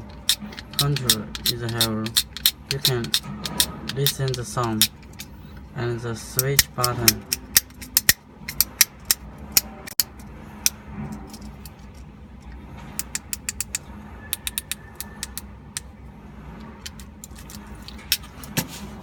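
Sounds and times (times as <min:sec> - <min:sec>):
fidget cube clicking: 0:00.0 - 0:05.3, 0:06.4 - 0:10.1, 0:14.4 - 0:15.5.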